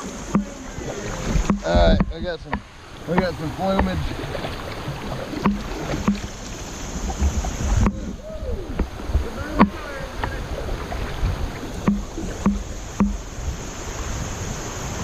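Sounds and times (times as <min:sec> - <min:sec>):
paddle knocking against kayak hull: 0:00.0 - 0:08.1, 0:08.7 - 0:13.4
creek water flowing: 0:00.0 - 0:15.0.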